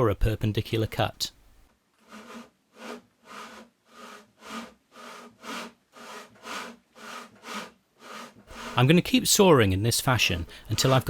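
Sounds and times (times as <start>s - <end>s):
hand saw cutting wood: 2.0s - 9.0s, 10.1s - 11.0s.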